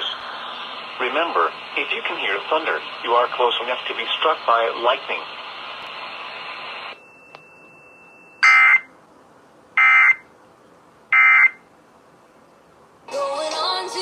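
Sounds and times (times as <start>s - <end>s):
radio hiss: 0.0s - 7.0s
digital data tones: 7.0s - 8.9s.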